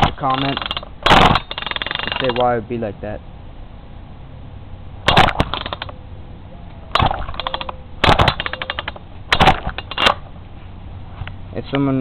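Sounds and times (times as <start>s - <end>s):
chainsaw engine turning over: 0.0s - 2.4s, 5.1s - 5.9s, 7.0s - 10.3s.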